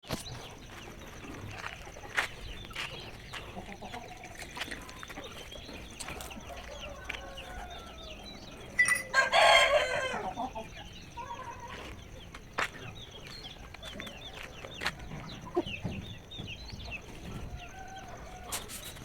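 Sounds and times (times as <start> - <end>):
poultry clucking and chirping: 0.0 - 19.0
rooster crowing: 6.4 - 11.5, 17.5 - 18.9.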